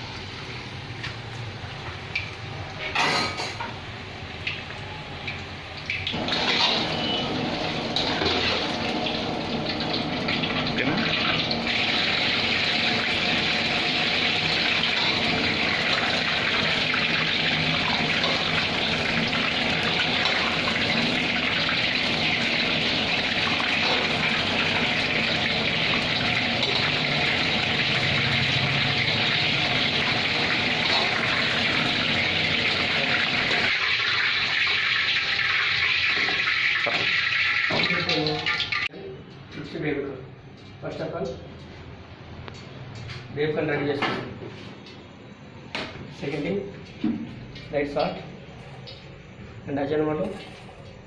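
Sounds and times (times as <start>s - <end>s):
chicken deep-frying in oil: 0.0s - 39.0s.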